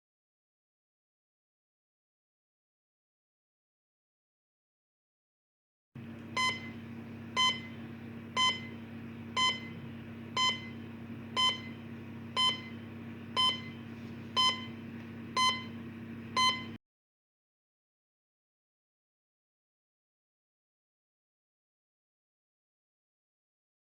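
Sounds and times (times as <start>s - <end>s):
low hum and hiss: 6.0s - 16.8s
short high electronic beeps: 16.4s - 16.8s.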